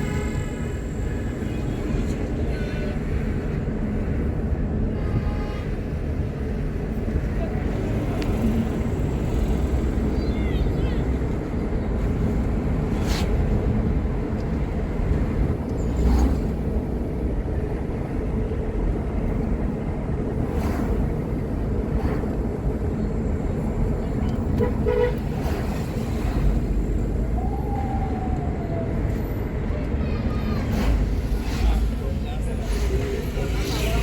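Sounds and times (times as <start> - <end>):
road traffic rumble: 0.0 - 34.0
car horn toot: 24.6 - 25.2.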